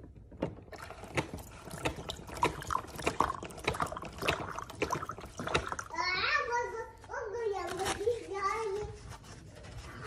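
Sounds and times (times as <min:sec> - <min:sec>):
water splashing and dripping: 0:00.7 - 0:06.0.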